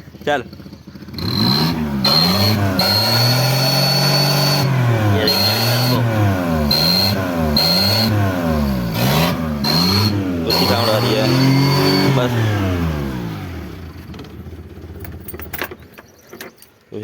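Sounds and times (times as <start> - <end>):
car engine revving: 0.0 - 15.9
exhaust whistle: 1.2 - 13.4.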